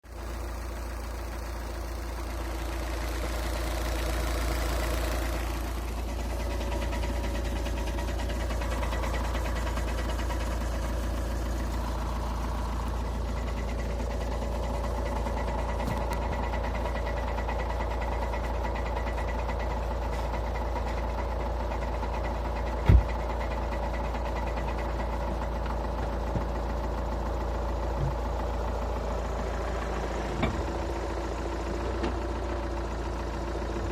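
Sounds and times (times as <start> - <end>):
diesel engine idling with knock: 0.1 - 33.9
loud thump: 22.8 - 23.1.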